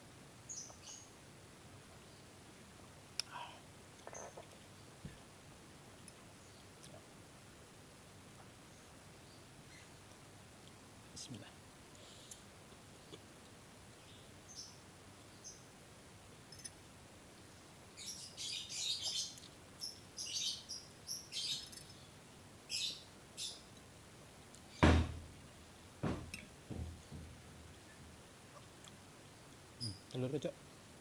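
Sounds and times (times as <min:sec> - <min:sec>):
birds chirping: 0:17.5 - 0:23.7, 0:29.8 - 0:30.5
loud thump: 0:24.8 - 0:25.3, 0:26.0 - 0:27.4
soft knocks: 0:24.8 - 0:25.3, 0:26.0 - 0:27.5.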